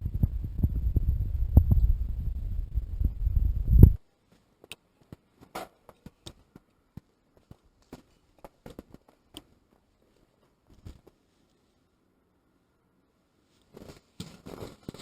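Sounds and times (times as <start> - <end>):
loud low rumble: 0.0 - 4.0.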